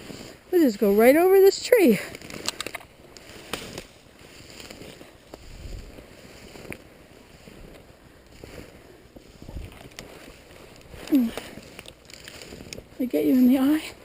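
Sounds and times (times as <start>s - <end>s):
snowshoe footsteps in snow: 0.0s - 14.0s
twigs snapping underfoot: 2.1s - 6.9s, 7.7s - 13.0s.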